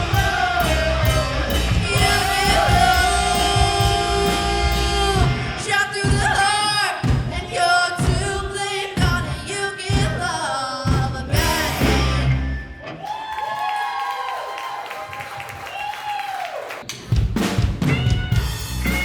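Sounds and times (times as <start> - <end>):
live rock band: 0.0 - 8.4, 10.9 - 13.0, 16.9 - 19.0
lead singer singing: 0.0 - 12.2.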